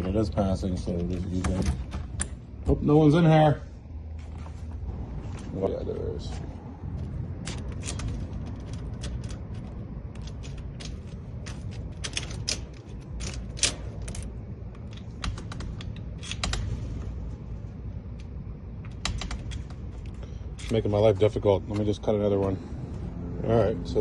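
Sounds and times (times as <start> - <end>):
low steady rumble: 0.0 - 24.0
key clicking in door lock: 7.4 - 16.7.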